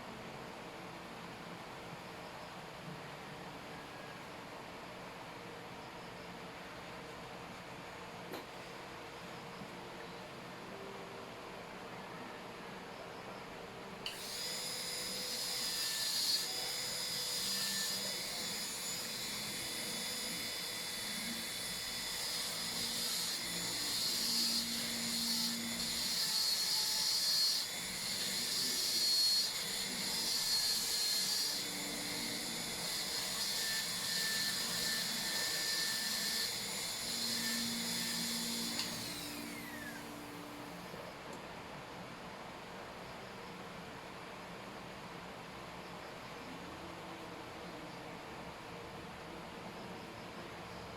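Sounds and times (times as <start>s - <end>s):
dental drill whining: 14.1s - 40.9s.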